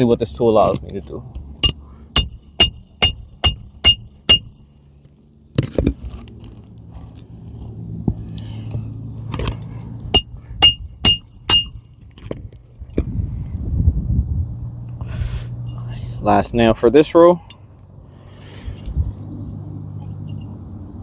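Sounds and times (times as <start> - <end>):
hammer striking roofing nails: 1.6 - 4.6.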